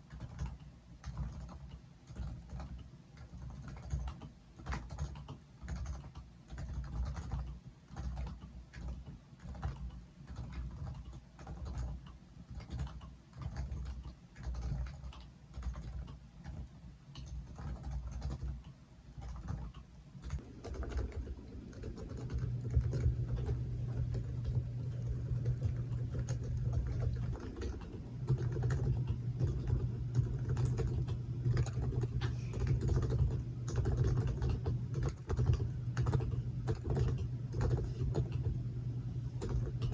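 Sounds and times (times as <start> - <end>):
soft muted keyboard typing: 0.0 - 39.9.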